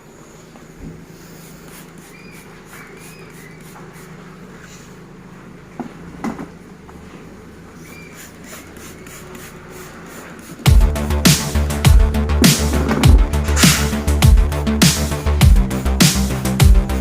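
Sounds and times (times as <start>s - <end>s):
washing machine motor hum: 6.6s - 15.7s.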